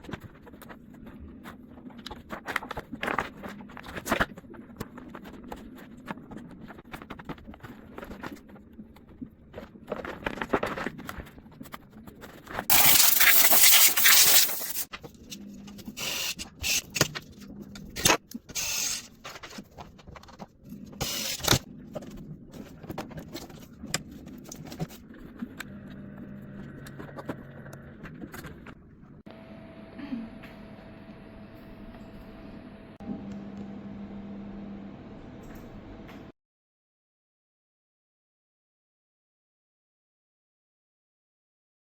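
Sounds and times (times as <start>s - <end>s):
loud hiss: 12.7s - 14.9s.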